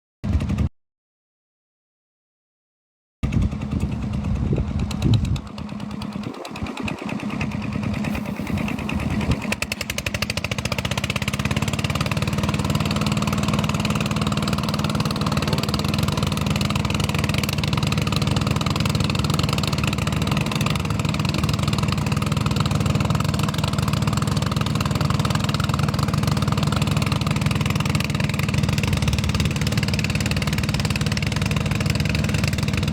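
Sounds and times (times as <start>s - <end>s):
engine running: 3.2s - 32.9s.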